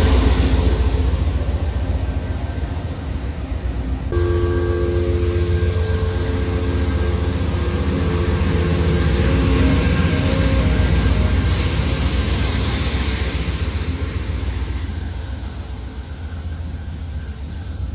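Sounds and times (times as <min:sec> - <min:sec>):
passenger train passing: 0:00.0 - 0:17.9
chord of steady tones: 0:04.1 - 0:11.5
wheels rattling on rail: 0:05.5 - 0:17.9.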